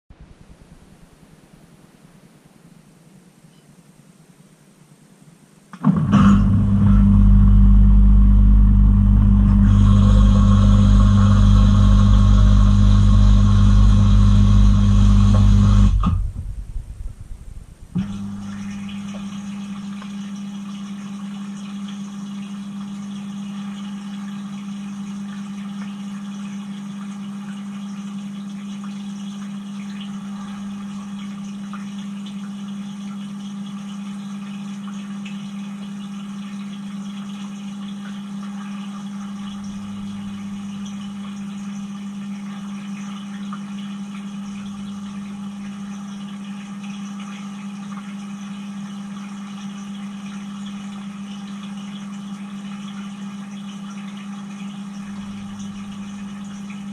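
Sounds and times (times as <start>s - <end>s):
dishwasher pump humming: 5.7s - 56.9s
water spraying: 9.0s - 19.8s.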